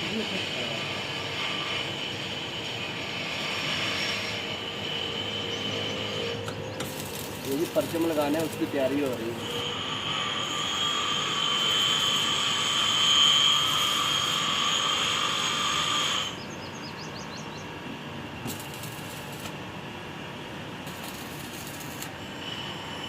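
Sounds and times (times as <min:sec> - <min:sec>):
power tool whining: 0:00.0 - 0:16.4, 0:18.4 - 0:19.6, 0:20.8 - 0:23.0.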